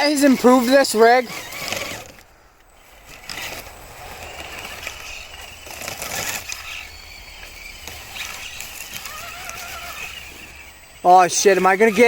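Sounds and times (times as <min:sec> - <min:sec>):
electric motor and gear whine: 0:00.0 - 0:12.0
tyres scraping on dirt: 0:00.0 - 0:12.0.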